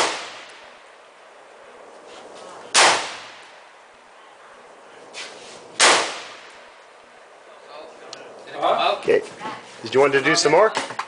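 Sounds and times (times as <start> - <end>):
rifle shot with echo: 0.0 - 0.7, 2.7 - 3.5, 5.8 - 6.6.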